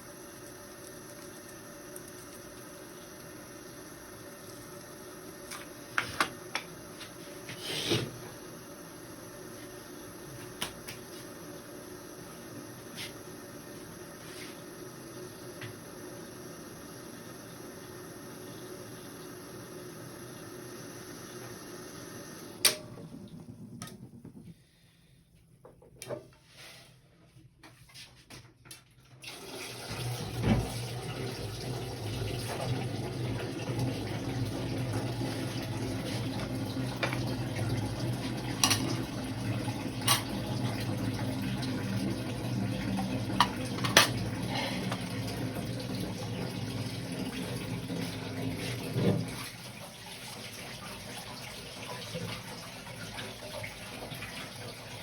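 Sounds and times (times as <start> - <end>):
kitchen tap running into sink: 0.0 - 6.6, 29.2 - 55.0.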